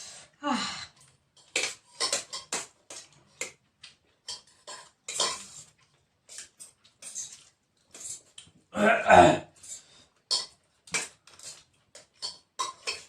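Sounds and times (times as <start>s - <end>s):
dishes and cutlery clinking: 1.4s - 3.6s, 4.2s - 8.4s, 9.6s - 13.0s.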